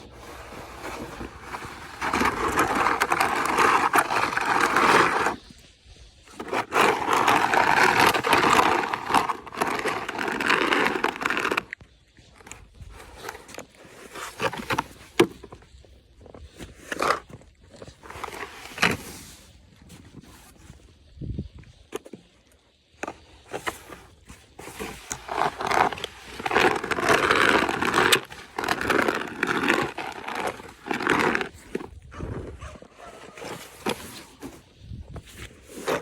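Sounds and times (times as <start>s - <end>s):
light knocks and crunches: 0.0s - 5.5s, 6.2s - 20.8s, 23.0s - 36.0s
long rough scraping: 0.0s - 20.6s, 23.0s - 36.0s.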